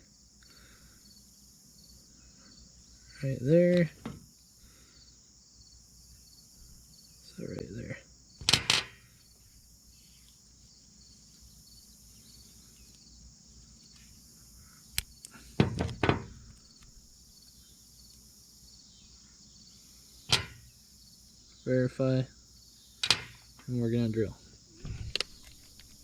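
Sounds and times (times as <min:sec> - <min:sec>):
insects trilling: 0:00.0 - 0:26.0
tool clicks and knocks: 0:08.4 - 0:09.0, 0:20.3 - 0:20.6, 0:23.0 - 0:23.4.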